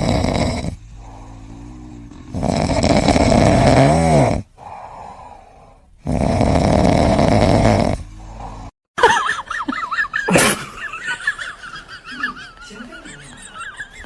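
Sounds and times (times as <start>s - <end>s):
pet snoring loudly: 0.0s - 8.8s.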